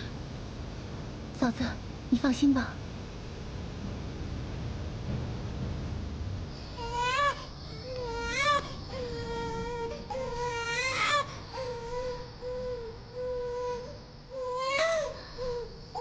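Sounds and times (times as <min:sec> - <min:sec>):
newborn baby crying: 0:06.8 - 0:16.0.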